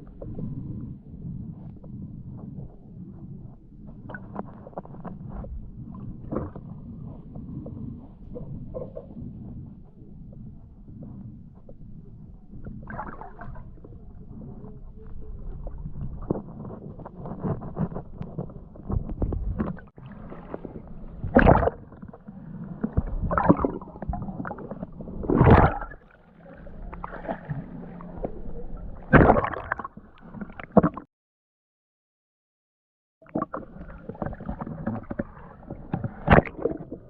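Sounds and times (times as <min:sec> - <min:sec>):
water gurgling and bubbling: 0:00.0 - 0:31.1, 0:33.2 - 0:37.0
bubbling gushes: 0:18.9 - 0:31.0.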